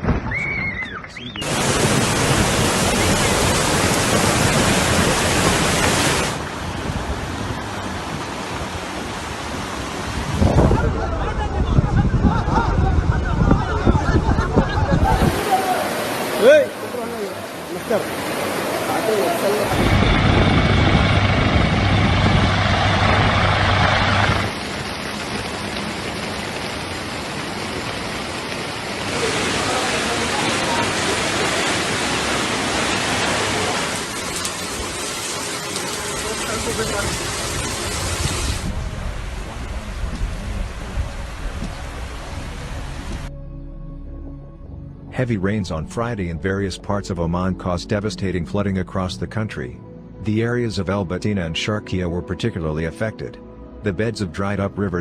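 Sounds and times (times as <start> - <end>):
floodwater rushing: 1.2 - 11.7, 13.6 - 43.3
engine running with low hum: 19.8 - 26.3.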